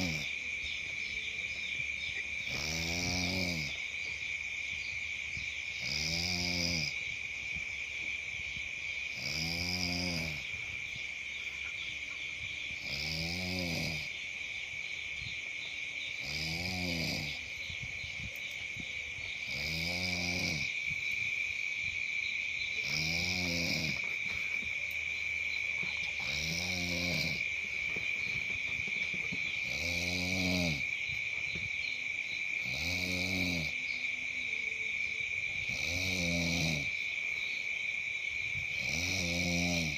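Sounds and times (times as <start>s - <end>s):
person snoring: 0.0s - 0.3s, 2.5s - 3.8s, 5.8s - 7.0s, 9.1s - 10.5s, 12.8s - 14.1s, 16.2s - 17.6s, 19.4s - 20.8s, 22.8s - 24.8s, 25.8s - 28.5s, 29.6s - 30.9s, 32.6s - 33.8s, 35.6s - 36.9s, 38.7s - 39.9s
insects chirring: 0.0s - 39.9s.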